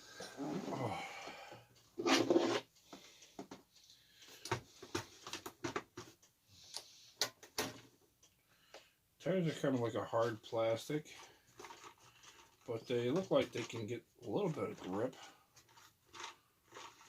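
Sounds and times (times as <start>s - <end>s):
plastic toy truck handling: 14.4s - 17.0s.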